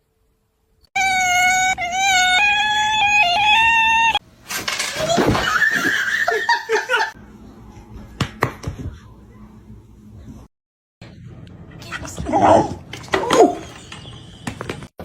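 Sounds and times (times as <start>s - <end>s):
person laughing: 5.1s - 7.2s.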